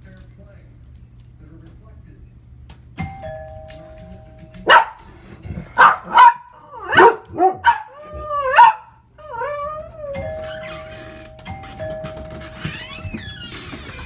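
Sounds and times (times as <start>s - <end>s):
ding-dong doorbell chime: 3.0s - 4.7s, 10.0s - 12.7s
dogs barking: 4.6s - 10.4s.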